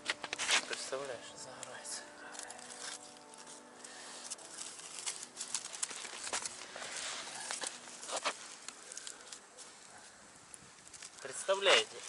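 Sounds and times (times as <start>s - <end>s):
sharp pops of burning wood: 0.0s - 1.0s, 7.4s - 12.0s
campfire crackling: 0.0s - 12.0s.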